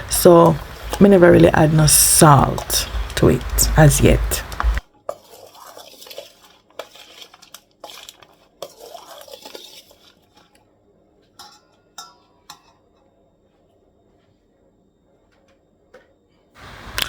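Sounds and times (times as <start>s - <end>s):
utensil stirring in a bowl: 0.0s - 10.6s, 11.3s - 12.8s
utensil clinking against bowl: 11.4s - 12.8s.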